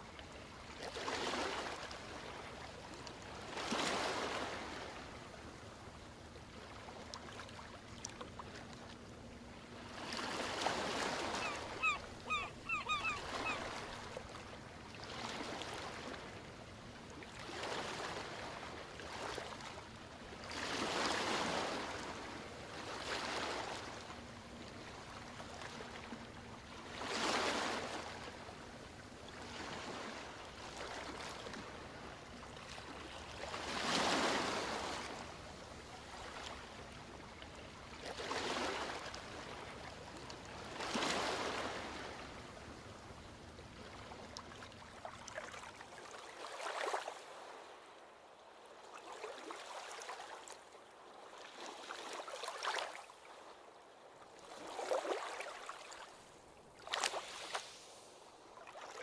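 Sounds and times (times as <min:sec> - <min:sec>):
bird short sharp calls: 0:11.3 - 0:13.8.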